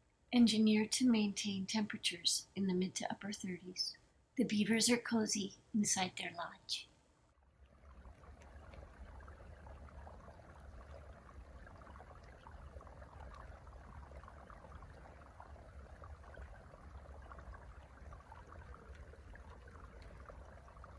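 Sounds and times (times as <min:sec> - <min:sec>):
fine crackling hiss: 0:04.0 - 0:20.9.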